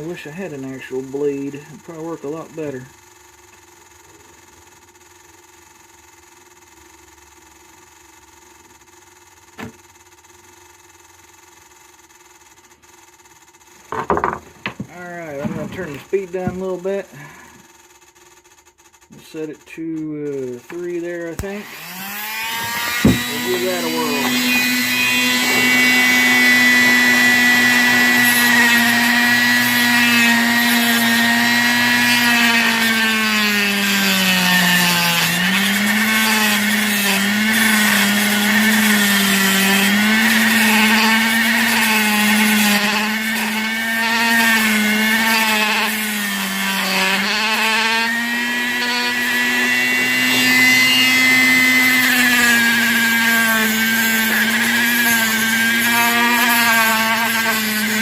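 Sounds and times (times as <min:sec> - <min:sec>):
rotary tool cutting metal: 0:18.1 - 0:58.0.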